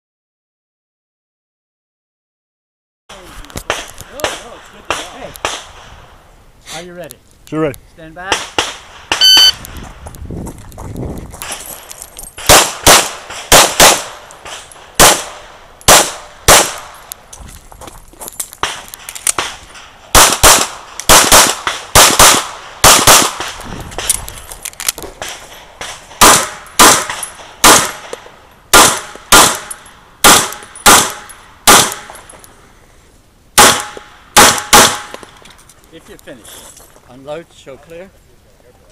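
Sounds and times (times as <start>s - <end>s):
pistol shots: 3.7s - 5.9s, 8.3s - 9.6s, 12.4s - 17.0s, 18.6s - 23.6s, 25.0s - 32.3s, 33.6s - 35.4s.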